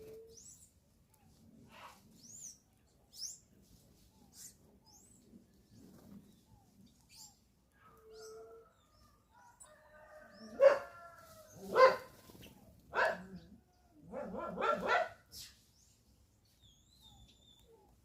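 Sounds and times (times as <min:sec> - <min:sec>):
small birds chirping: 0:00.0 - 0:18.0
dog barking: 0:10.5 - 0:11.0, 0:11.6 - 0:12.2, 0:12.9 - 0:13.4, 0:14.1 - 0:15.2.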